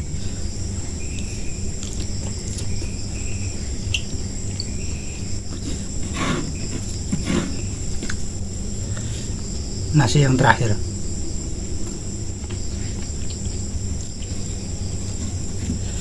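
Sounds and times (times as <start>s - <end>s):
crickets chirring: 0.0s - 16.0s
person chewing: 1.1s - 3.0s, 11.8s - 16.0s.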